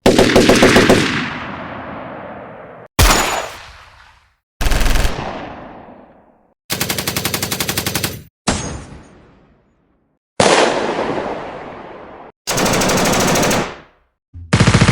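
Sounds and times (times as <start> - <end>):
machine-gun bursts: 12.5 - 13.7.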